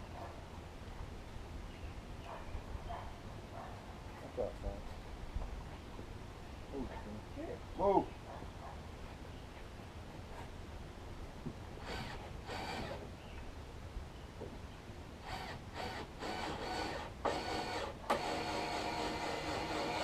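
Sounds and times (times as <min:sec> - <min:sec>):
power drill driving screws: 0:11.8 - 0:13.0, 0:15.2 - 0:20.0.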